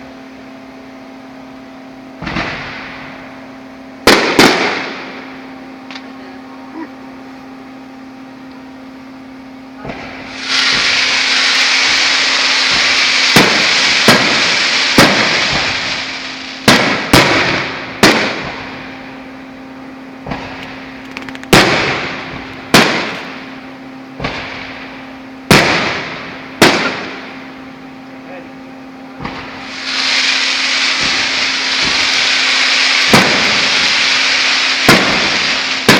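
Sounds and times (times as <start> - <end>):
fireworks sharp bangs: 2.2 - 3.2, 4.0 - 5.3, 9.8 - 19.0, 20.2 - 23.6, 24.2 - 24.9, 25.5 - 27.4, 29.2 - 35.9
fireworks hissing spray: 10.0 - 18.8, 29.3 - 35.9.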